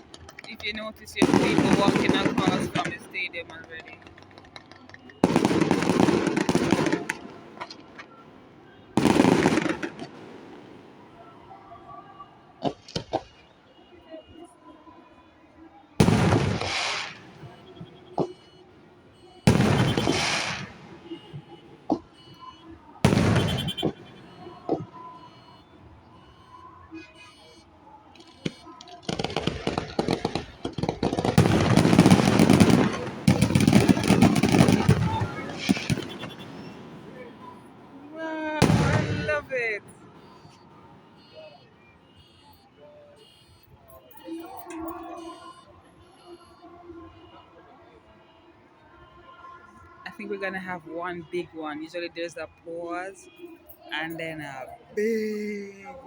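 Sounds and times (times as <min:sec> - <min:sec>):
fireworks exploding and crackling: 0:00.0 - 0:11.3, 0:12.6 - 0:13.4, 0:16.0 - 0:18.8, 0:19.4 - 0:25.4, 0:28.2 - 0:41.4, 0:53.8 - 0:56.0.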